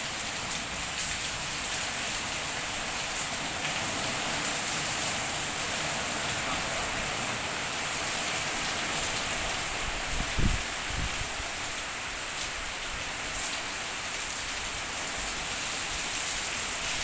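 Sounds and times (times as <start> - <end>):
heavy rain pouring: 0.0 - 17.0
strong wind: 8.8 - 11.9.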